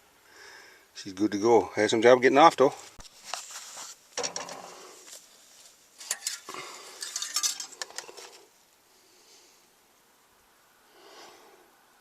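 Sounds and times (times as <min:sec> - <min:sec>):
hand tools clinking on metal: 0:06.0 - 0:08.2.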